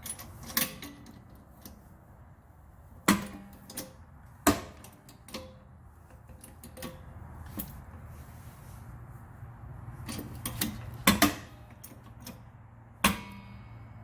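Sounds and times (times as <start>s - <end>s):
sharp metallic knocks and clanks: 3.0s - 7.8s, 10.1s - 13.8s.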